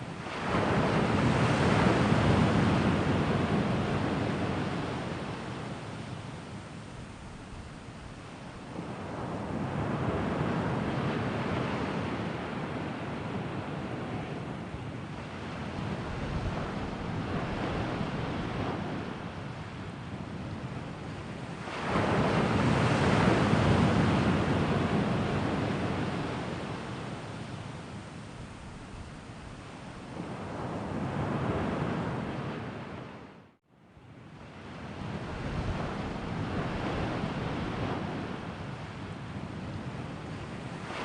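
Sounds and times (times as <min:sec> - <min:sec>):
sea waves washing onto shore: 0:00.1 - 0:32.9.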